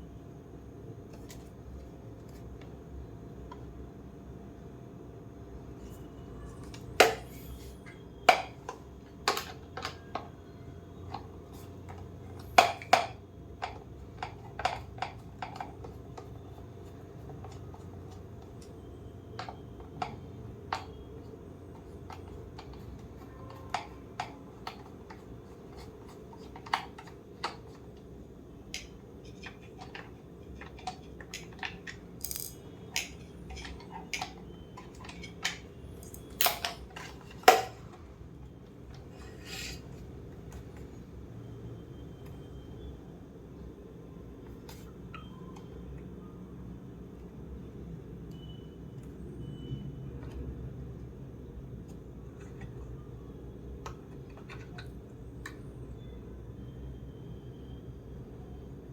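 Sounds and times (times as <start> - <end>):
faint steady hum: 0.0 - 58.9
clicks of parts and tools handled: 28.8 - 37.8.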